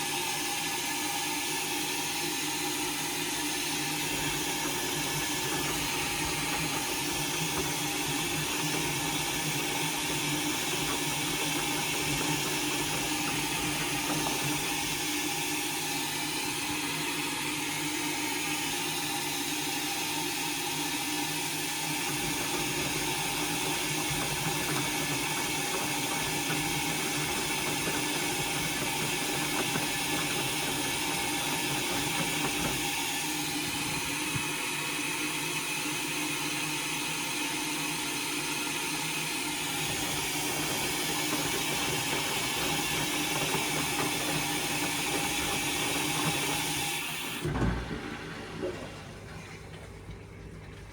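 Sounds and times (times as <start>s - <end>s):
washing machine humming: 0.0s - 50.9s
water rushing: 39.7s - 50.9s.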